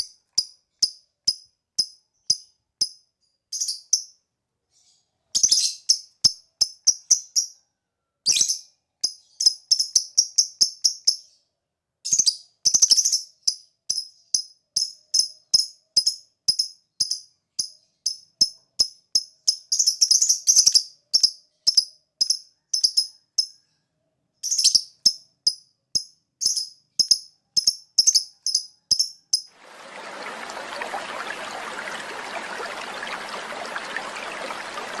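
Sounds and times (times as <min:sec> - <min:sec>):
lovebird chirping: 0:26.4 - 0:35.0.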